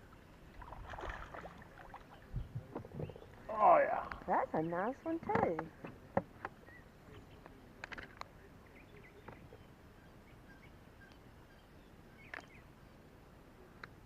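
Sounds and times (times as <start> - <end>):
faint bird chirps: 6.6 - 7.7, 8.4 - 13.0.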